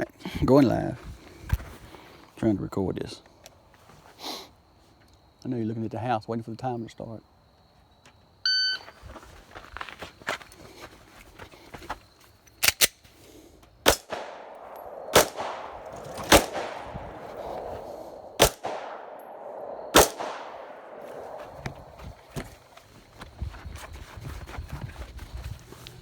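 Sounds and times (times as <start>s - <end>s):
pistol shots with echo: 13.8s - 22.0s.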